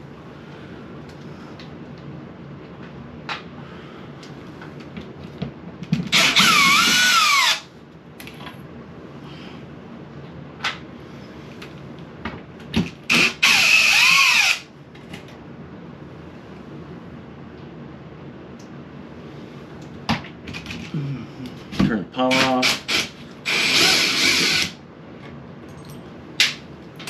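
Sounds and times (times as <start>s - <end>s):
power drill motor whine: 6.1s - 7.7s, 13.1s - 14.7s, 22.7s - 24.8s.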